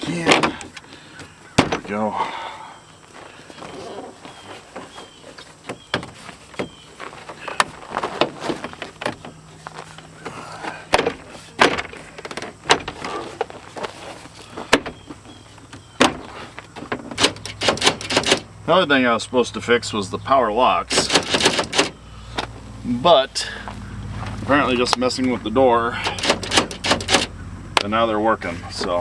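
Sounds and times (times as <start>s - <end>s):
plastic trim panel knocking and clicking: 16.0s - 18.5s, 20.9s - 22.0s, 26.1s - 27.3s.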